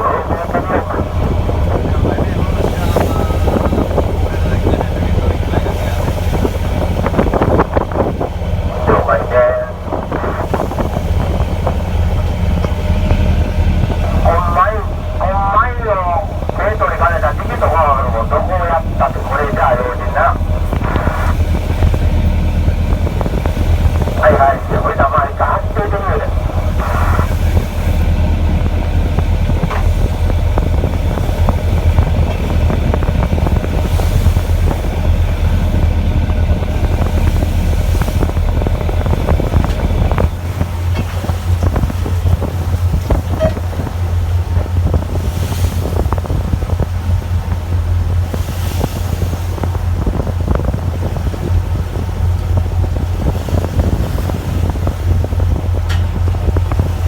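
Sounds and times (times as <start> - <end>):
boat engine droning: 0.0 - 57.0
wind noise on microphone: 0.0 - 57.0.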